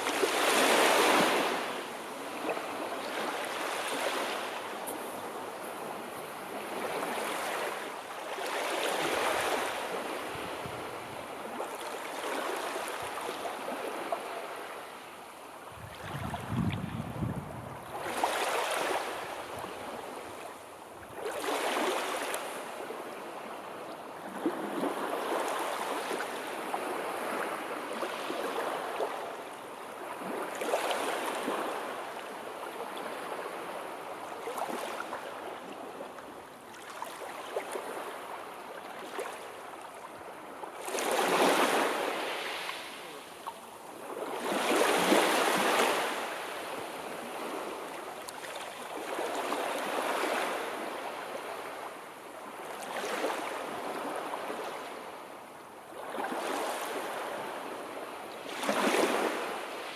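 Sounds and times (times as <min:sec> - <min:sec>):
sea waves washing in: 0:00.0 - 0:20.4.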